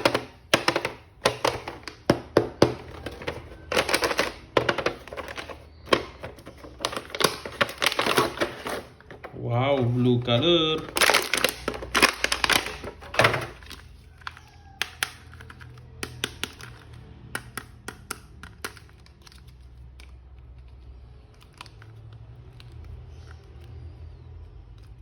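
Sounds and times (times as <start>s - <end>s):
toy parts clicking and snapping: 0.0s - 9.2s, 10.3s - 23.8s
plastic packaging crackling: 0.0s - 16.9s.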